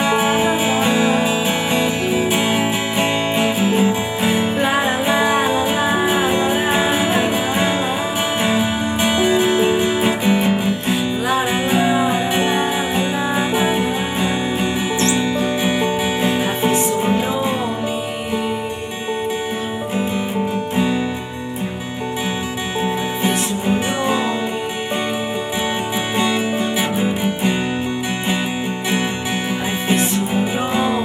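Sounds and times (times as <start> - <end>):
strummed acoustic guitar music: 0.0 - 31.0
pitch-bending melody line: 14.9 - 15.6.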